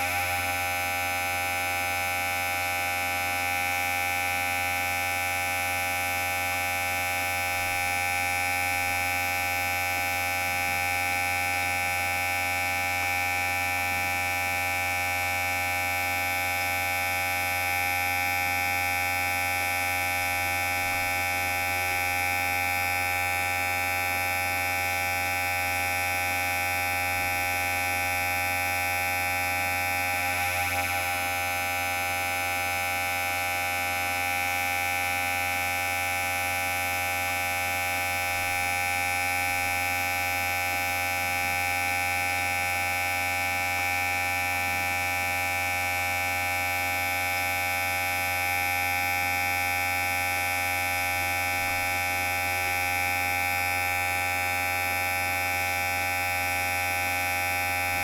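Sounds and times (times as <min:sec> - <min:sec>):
electric hair clipper buzzing: 0:06.2 - 0:33.9, 0:37.0 - 0:42.8, 0:45.6 - 0:58.0.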